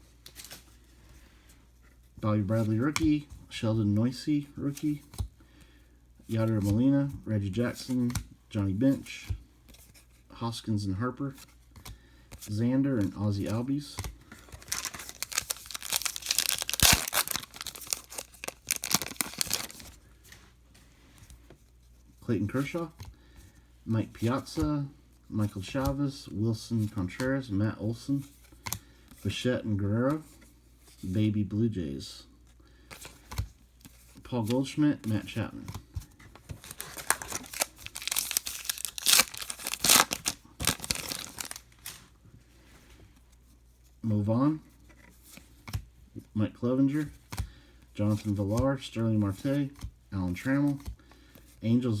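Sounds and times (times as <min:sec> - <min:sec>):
foil wrapper tearing and crinkling: 0:14.6 - 0:19.9, 0:36.6 - 0:41.9.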